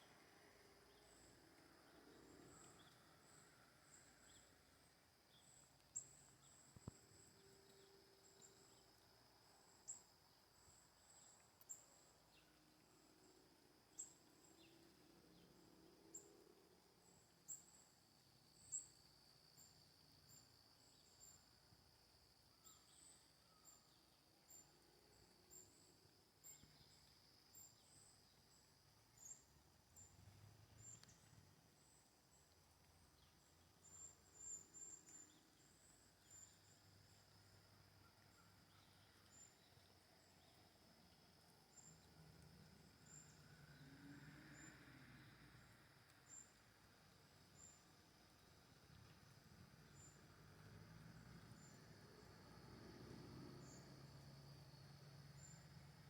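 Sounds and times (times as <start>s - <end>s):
high insect drone: 33.2s - 56.0s.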